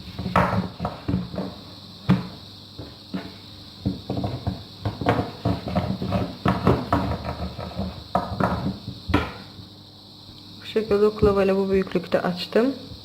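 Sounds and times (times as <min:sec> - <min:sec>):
rolling pin clacking on board: 0:03.8 - 0:09.5
sharp knock of rolling pin: 0:03.9 - 0:09.5.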